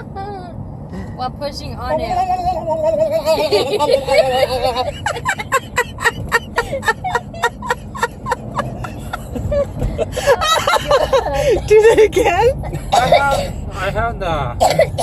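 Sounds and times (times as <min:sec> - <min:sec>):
car road noise: 0:00.0 - 0:15.0.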